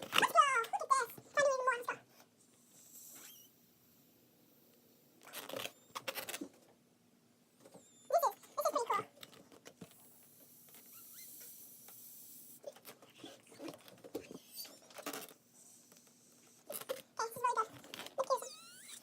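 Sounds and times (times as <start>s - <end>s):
rubber balloon squeaking: 3.0s - 3.6s, 10.0s - 15.3s, 16.6s - 19.0s.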